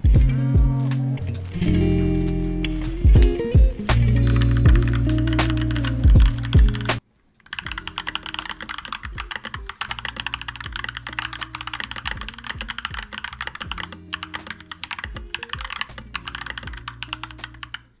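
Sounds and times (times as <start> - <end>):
background music: 0.0 - 18.0
fast typing on mechanical keyboard: 4.3 - 17.9.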